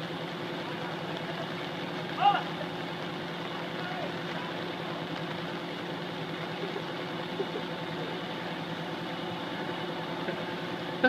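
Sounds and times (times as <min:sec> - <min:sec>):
engine idling: 0:00.0 - 0:11.0
rain hissing: 0:00.0 - 0:11.0.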